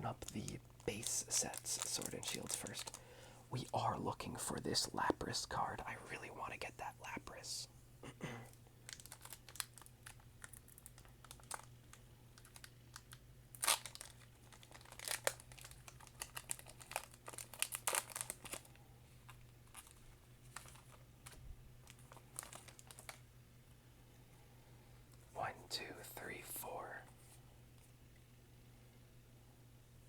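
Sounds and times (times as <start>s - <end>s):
faint low hum: 0.0s - 30.0s
foil wrapper crinkling and tearing: 0.2s - 3.0s, 8.8s - 23.2s.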